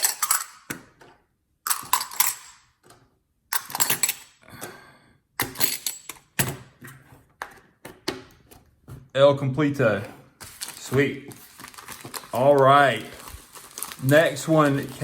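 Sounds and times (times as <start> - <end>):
metal coins clattering: 0.0 - 0.7, 1.7 - 2.6, 3.5 - 4.4, 5.4 - 6.2.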